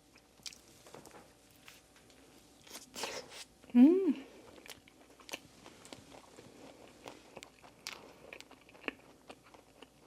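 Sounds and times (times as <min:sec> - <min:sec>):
mouth chewing food: 0:04.5 - 0:10.0.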